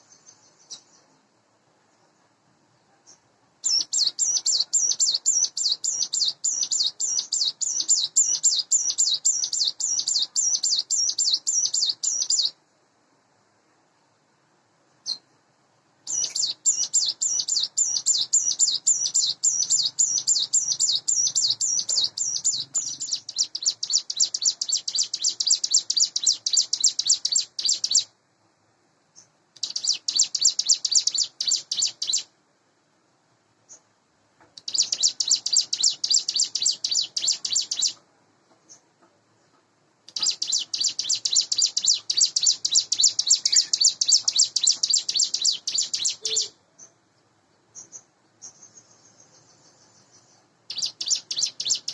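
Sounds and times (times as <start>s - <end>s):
bird singing high chirping notes: 3.6s - 12.6s, 16.1s - 28.1s, 29.6s - 32.3s, 34.6s - 38.0s, 40.1s - 46.6s, 47.8s - 51.9s.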